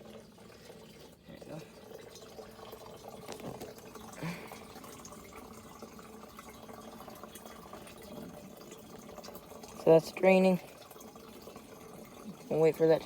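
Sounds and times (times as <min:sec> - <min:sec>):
gasoline trickling into a can: 0:00.0 - 0:13.0.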